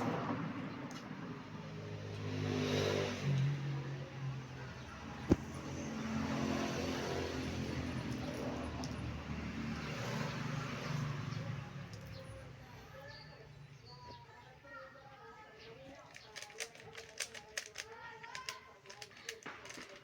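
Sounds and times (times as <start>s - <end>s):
vehicle engine revving: 1.6s - 12.2s.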